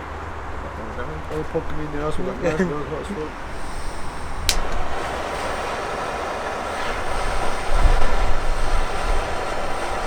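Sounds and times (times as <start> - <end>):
gas torch flame hissing: 3.2 - 10.0
wind buffeting microphone: 3.3 - 10.0
sharp click: 4.4 - 4.8.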